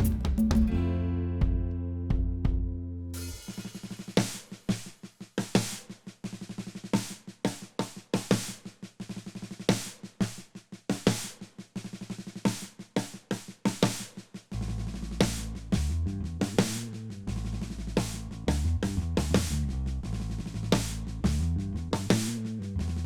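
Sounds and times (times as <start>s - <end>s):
latin percussion drums: 0.0s - 0.9s, 3.2s - 14.5s.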